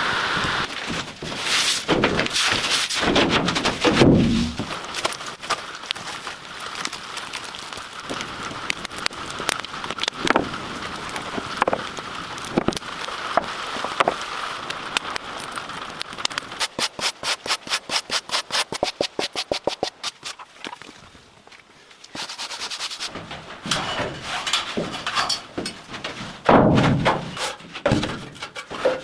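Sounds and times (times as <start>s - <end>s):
hand tool scraping wood: 16.5s - 20.6s, 22.2s - 25.4s.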